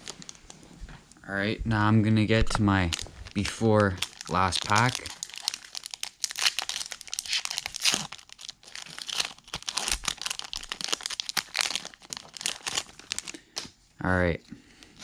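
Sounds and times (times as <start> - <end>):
foil wrapper tearing and crinkling: 2.8 - 13.7.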